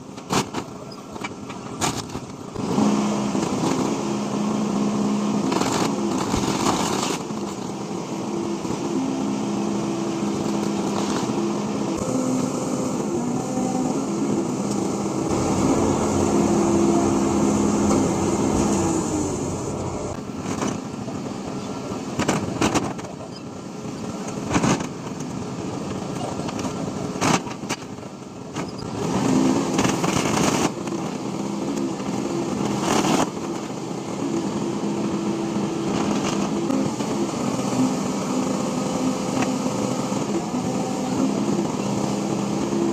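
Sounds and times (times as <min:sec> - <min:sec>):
noisy background: 0:00.2 - 0:42.9
engine humming: 0:02.3 - 0:27.6.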